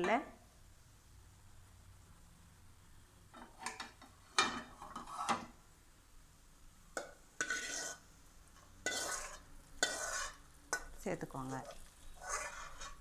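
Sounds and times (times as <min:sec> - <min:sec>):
metal spoon scraping pan: 0:03.4 - 0:05.6, 0:07.0 - 0:13.0.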